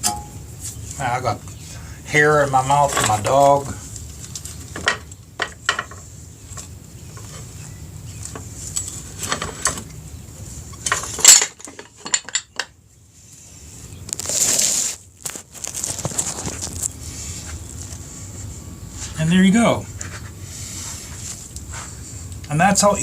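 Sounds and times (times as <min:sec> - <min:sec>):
metal parts clinking: 0:10.8 - 0:12.7.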